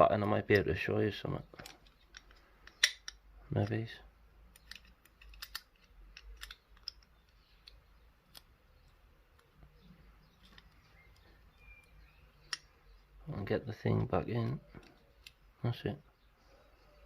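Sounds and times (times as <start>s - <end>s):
small metal parts clicking: 1.5s - 3.8s, 4.4s - 12.7s.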